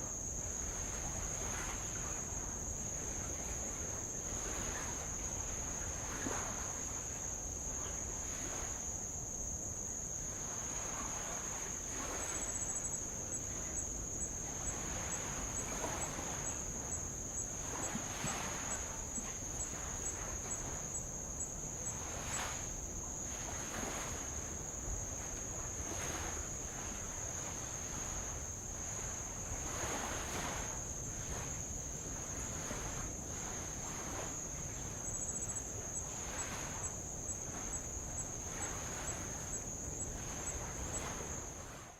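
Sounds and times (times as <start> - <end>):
insect chirping in pulses: 6.6 - 23.6, 33.6 - 41.6
insect high-pitched trill: 10.4 - 22.9, 34.4 - 41.5.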